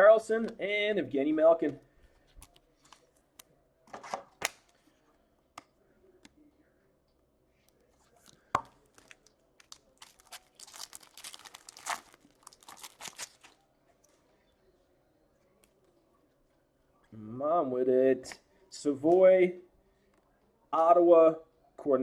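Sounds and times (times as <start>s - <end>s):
foil wrapper tearing and crinkling: 8.9s - 13.6s.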